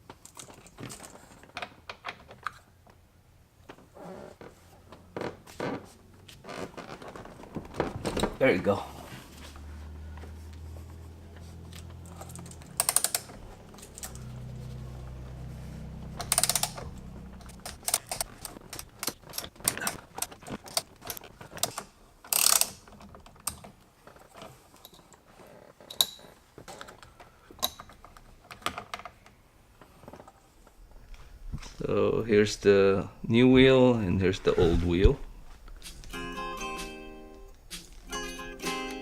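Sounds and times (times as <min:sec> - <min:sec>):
ratchet clicking: 0:12.2 - 0:14.2, 0:16.2 - 0:19.2, 0:22.3 - 0:22.8.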